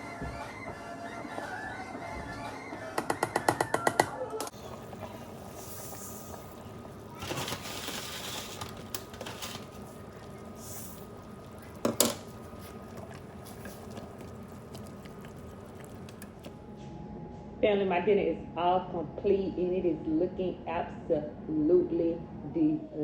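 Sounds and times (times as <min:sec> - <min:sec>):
food hissing in a pot: 0:04.6 - 0:16.5.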